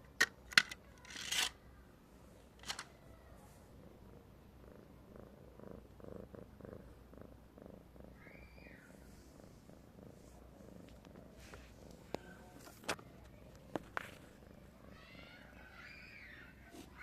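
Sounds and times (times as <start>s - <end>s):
cat purring: 2.2s - 15.7s.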